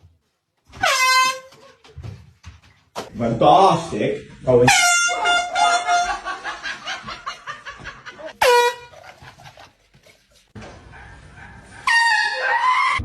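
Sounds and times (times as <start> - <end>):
air horn blasts: 0.8 - 1.7, 4.7 - 6.3, 8.4 - 8.9, 11.8 - 13.0
pulses of laughter: 5.6 - 9.8.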